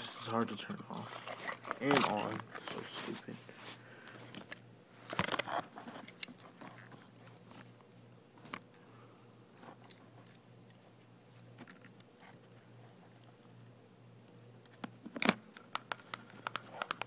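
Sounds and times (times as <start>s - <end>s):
faint steady hum: 0.0s - 17.0s
plastic clicks and rattles: 14.7s - 17.0s.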